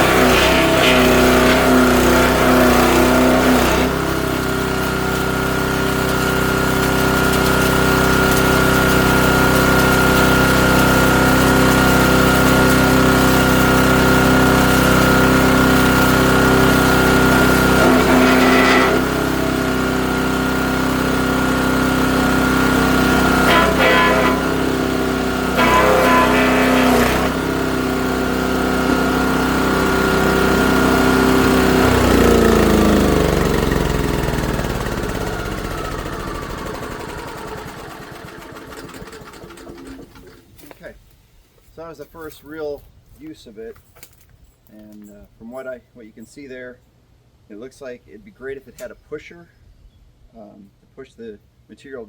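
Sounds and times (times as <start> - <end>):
wood chipper engine drone: 0.0 - 40.8.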